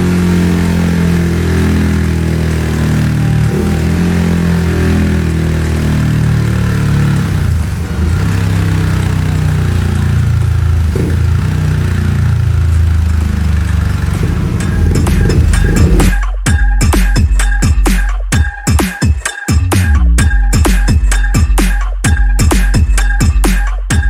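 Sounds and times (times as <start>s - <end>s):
motorcycle engine revving: 0.0s - 18.1s.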